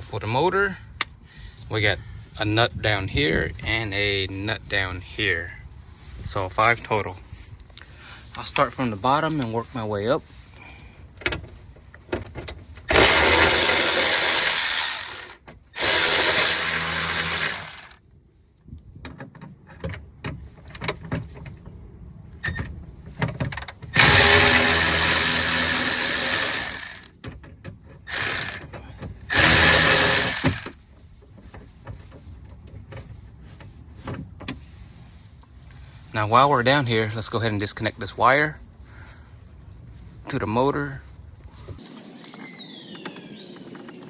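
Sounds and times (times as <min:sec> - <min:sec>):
cordless power tool whirring: 0:12.9 - 0:18.0, 0:23.5 - 0:27.1, 0:28.1 - 0:28.7, 0:29.3 - 0:30.8.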